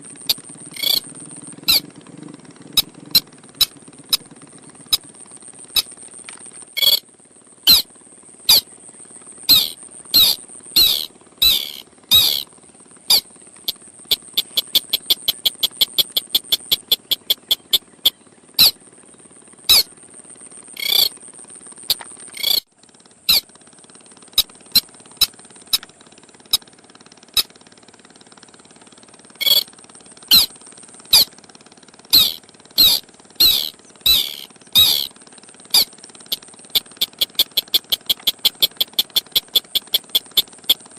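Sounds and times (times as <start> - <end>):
bird lure call sliding notes: 0.0 - 1.1, 2.8 - 4.2, 6.8 - 7.0, 7.7 - 7.9, 9.5 - 12.4, 14.1 - 18.8, 19.7 - 19.9, 20.8 - 21.1, 21.9 - 22.6, 29.4 - 29.7, 32.1 - 35.1, 36.8 - 40.8
quick ticking notes: 0.2 - 1.1, 2.8 - 4.3, 6.8 - 7.0, 9.5 - 12.4, 13.1 - 18.8, 20.8 - 21.1, 29.4 - 29.6, 32.1 - 35.1, 35.7 - 40.8.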